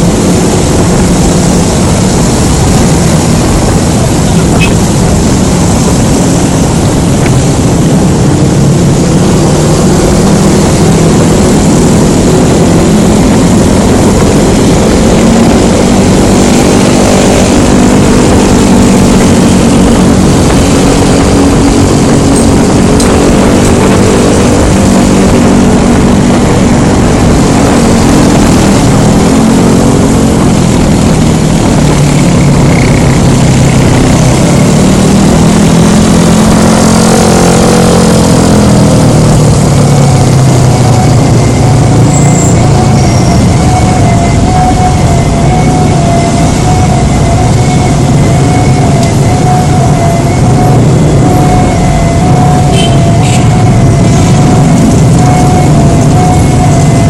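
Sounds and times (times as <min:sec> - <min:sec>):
wind rumble: 0:00.0 - 0:57.0
scooter engine running: 0:08.3 - 0:57.0.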